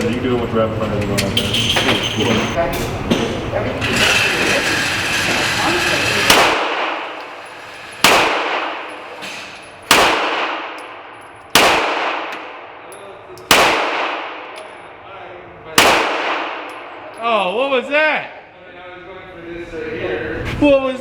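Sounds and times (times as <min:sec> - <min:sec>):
pistol shots echoing: 0:06.3 - 0:07.2, 0:08.0 - 0:09.0, 0:09.8 - 0:14.9, 0:15.8 - 0:17.1.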